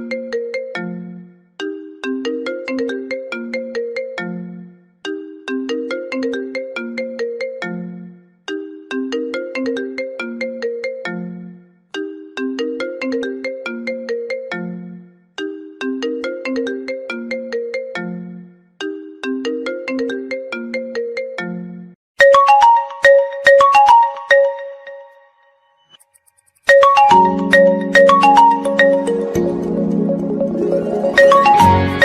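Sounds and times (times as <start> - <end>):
mobile phone ringtone melody: 19.2 - 25.7, 26.6 - 32.0
higher brighter ringtone: 22.2 - 32.0.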